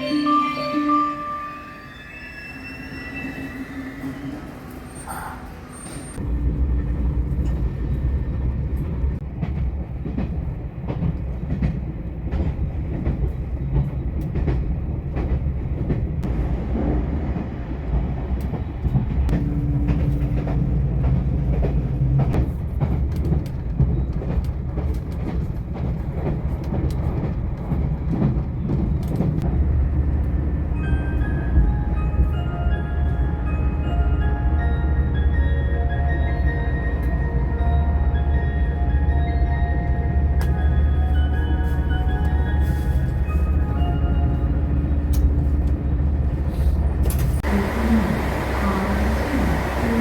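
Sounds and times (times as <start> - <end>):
train rumbling on rails: 0.0 - 50.0.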